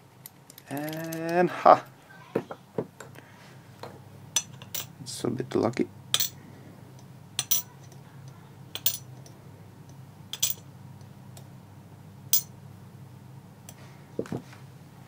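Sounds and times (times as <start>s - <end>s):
metal lock parts clinking: 0.5s - 1.4s, 7.4s - 7.8s, 8.7s - 9.1s, 10.3s - 10.6s.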